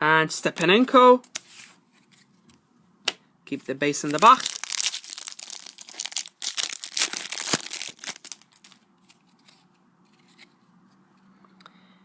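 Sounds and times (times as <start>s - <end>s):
wrapper crinkling: 4.0s - 8.8s
foil pack tearing: 4.2s - 8.8s.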